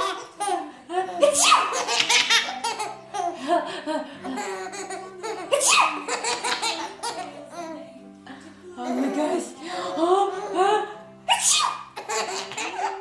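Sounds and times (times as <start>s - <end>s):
baby squealing: 0.0s - 0.6s, 1.2s - 3.3s, 4.5s - 7.3s, 11.3s - 13.0s
baby giggling and laughing: 0.0s - 7.9s, 11.3s - 13.0s.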